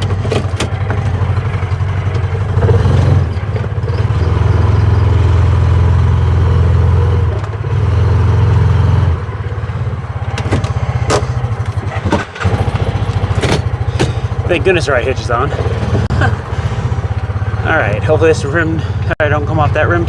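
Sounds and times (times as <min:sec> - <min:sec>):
sharp knocks and clatter: 0:00.0 - 0:04.7, 0:10.1 - 0:14.5
small vehicle engine running: 0:00.0 - 0:20.0.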